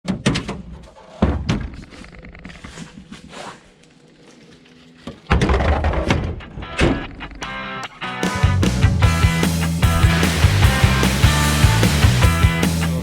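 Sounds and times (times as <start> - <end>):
dull thuds and knocks: 0.0 - 2.0.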